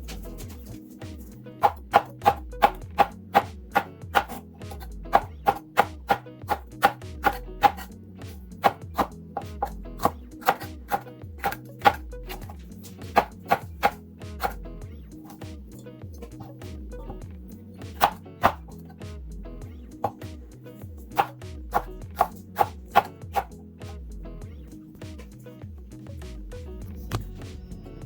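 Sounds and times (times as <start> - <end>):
background music with bass: 0.0 - 28.0
knife chopping on cutting board: 1.6 - 14.6, 17.9 - 18.7, 21.2 - 23.5.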